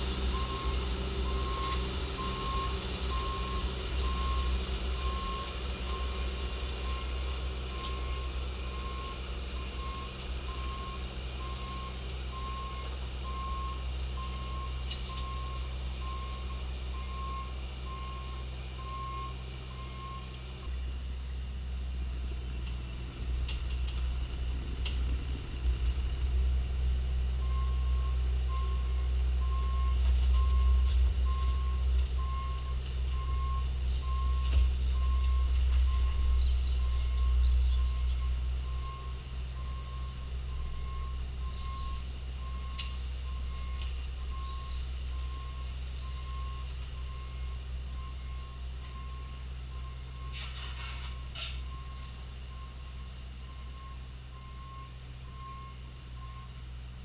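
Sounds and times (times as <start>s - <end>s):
diesel engine running: 0.0s - 57.0s
backup alarm beeping: 0.3s - 6.2s, 7.7s - 20.3s, 27.4s - 50.4s.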